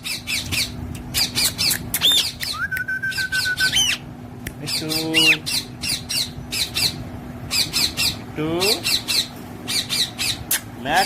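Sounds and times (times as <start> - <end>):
parrot chirping: 0.0 - 4.0, 4.7 - 8.2, 8.8 - 10.7
parrot squawking call: 0.0 - 4.0, 8.8 - 10.7
parrot whistled note: 2.5 - 4.0.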